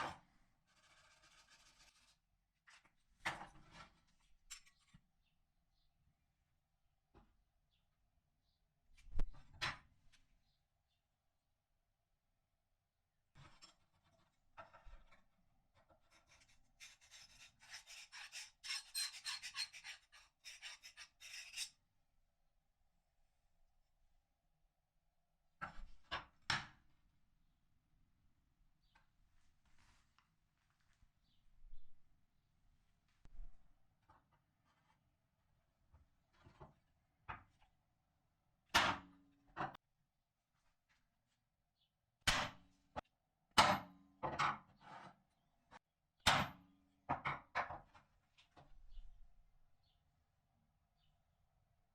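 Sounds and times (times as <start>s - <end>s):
hand tool rasping: 16.2s - 21.7s.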